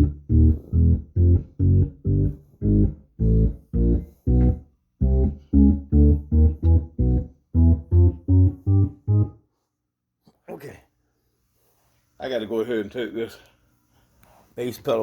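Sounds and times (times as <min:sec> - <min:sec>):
deep organ bass notes: 0:00.0 - 0:09.4.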